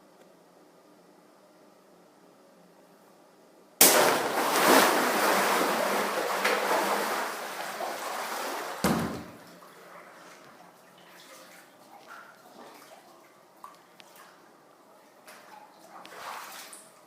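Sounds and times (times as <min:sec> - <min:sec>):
water balloon bursting: 0:03.8 - 0:05.9
water gushing and splashing: 0:03.8 - 0:09.6
thump: 0:08.8 - 0:09.4.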